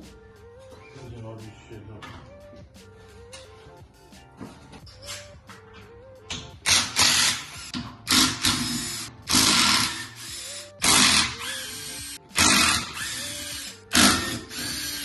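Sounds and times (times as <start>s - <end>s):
power tool whirring: 6.7s - 15.0s.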